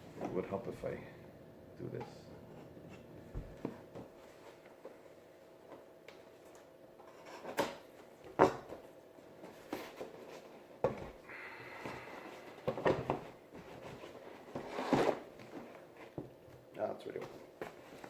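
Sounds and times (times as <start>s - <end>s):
objects knocking and clattering: 7.1s - 8.8s.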